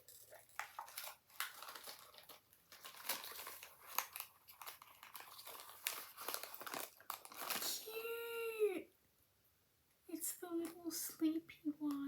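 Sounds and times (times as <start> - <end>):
packaging crinkling and tearing: 0.0 - 8.0.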